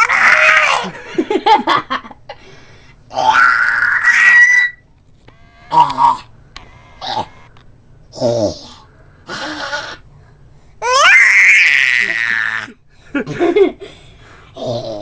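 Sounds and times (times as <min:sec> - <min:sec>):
baby squawking: 0:03.2 - 0:04.8, 0:09.3 - 0:10.0
baby squealing high-pitched: 0:03.2 - 0:04.8, 0:10.8 - 0:12.7.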